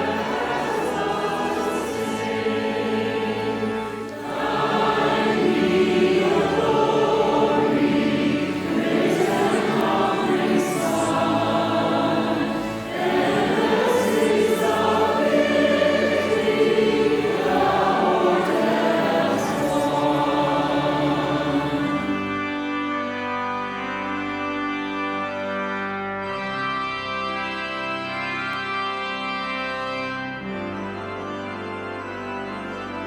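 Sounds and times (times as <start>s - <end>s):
choir singing: 0.0s - 22.4s.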